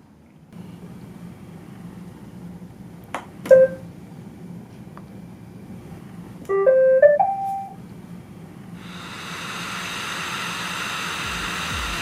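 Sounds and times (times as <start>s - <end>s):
robot vacuum motor whirring: 8.8s - 12.0s.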